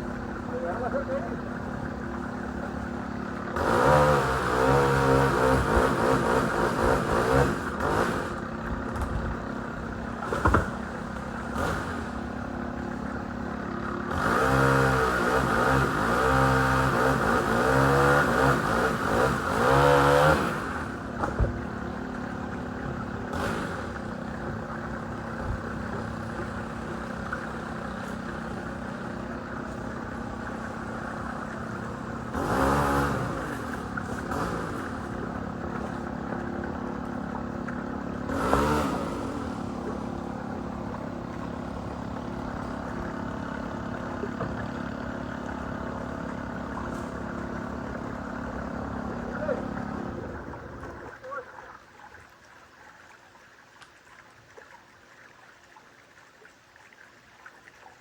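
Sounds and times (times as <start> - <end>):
engine equipment running: 0.0 - 51.2
engine revving up and down: 3.5 - 8.6, 10.2 - 12.5, 14.0 - 21.4, 22.9 - 24.7, 25.3 - 36.4, 37.2 - 51.0.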